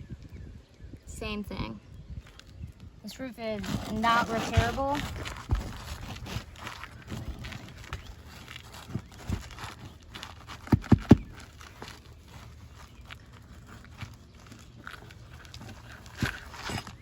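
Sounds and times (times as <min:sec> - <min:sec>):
knocks on roof shingles: 0:08.8 - 0:12.0.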